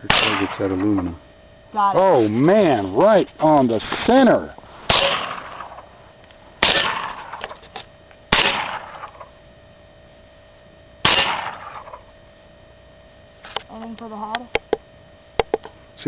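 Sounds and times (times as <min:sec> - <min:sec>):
rifle shots: 0:00.0 - 0:01.0, 0:04.9 - 0:05.9, 0:06.6 - 0:07.6, 0:08.3 - 0:09.3, 0:11.0 - 0:12.0.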